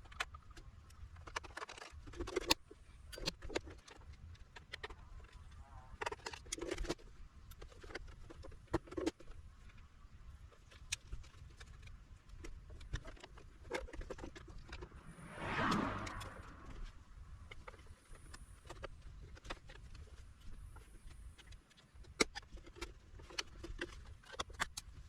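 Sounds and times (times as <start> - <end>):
loud scraping rush: 14.7 - 17.0.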